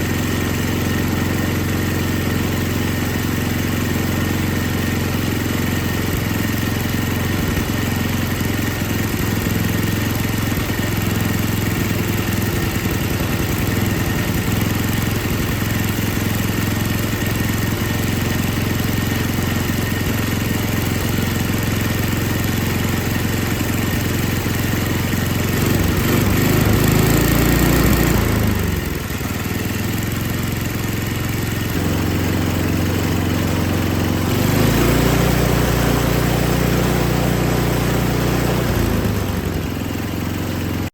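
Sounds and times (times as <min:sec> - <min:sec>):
snowblower engine running: 0:00.0 - 0:40.9.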